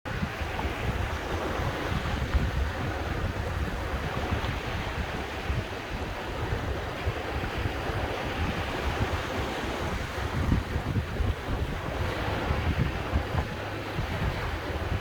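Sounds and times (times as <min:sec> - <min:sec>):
wind buffeting microphone: 0:00.0 - 0:15.0
sea surf washing: 0:00.1 - 0:15.0.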